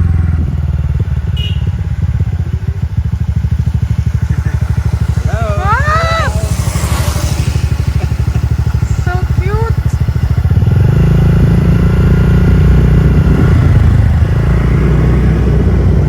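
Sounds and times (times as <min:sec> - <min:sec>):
scooter engine running: 0:00.0 - 0:16.0
wavering voice-like call: 0:05.0 - 0:07.8.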